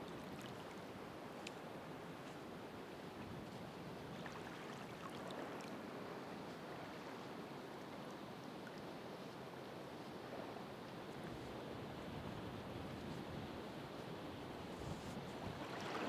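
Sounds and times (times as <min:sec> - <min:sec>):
faint ticks: 0:01.4 - 0:01.6.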